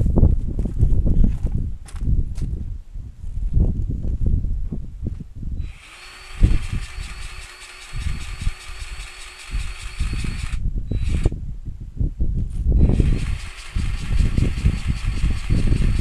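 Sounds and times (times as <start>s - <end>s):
power tool motor whining: 5.6s - 11.3s, 12.8s - 16.0s.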